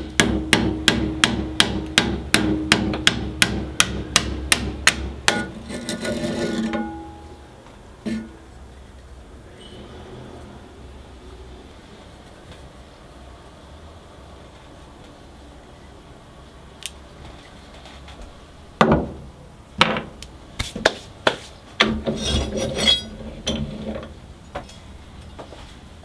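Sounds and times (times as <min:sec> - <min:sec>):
rattling scrape: 0:05.3 - 0:07.2, 0:08.0 - 0:08.4, 0:22.1 - 0:24.1.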